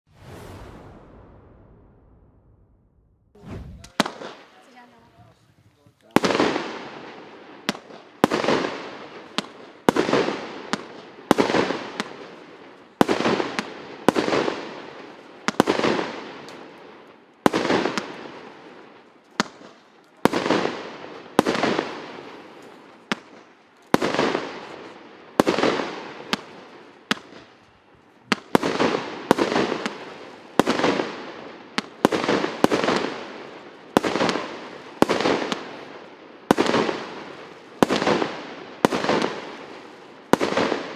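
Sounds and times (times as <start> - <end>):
fireworks bangs: 0.1 - 5.3, 36.5 - 40.9
light fireworks cracks: 31.8 - 40.9.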